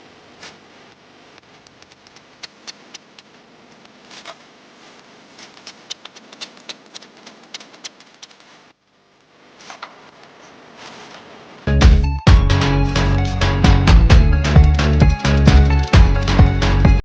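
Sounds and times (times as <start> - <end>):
bamboo pieces clicking: 1.7 - 3.3, 5.4 - 8.5.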